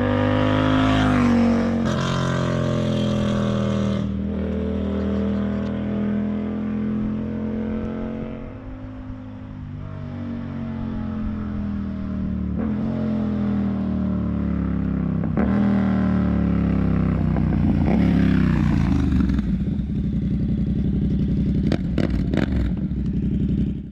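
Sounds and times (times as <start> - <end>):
motorcycle engine revving: 0.0 - 23.9.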